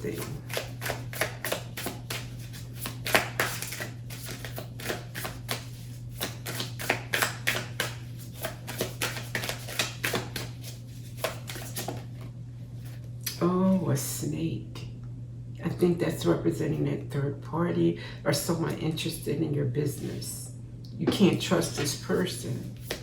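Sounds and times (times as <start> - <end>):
cards being shuffled: 0.0 - 13.0, 21.7 - 23.0
steady low hum: 0.0 - 23.0.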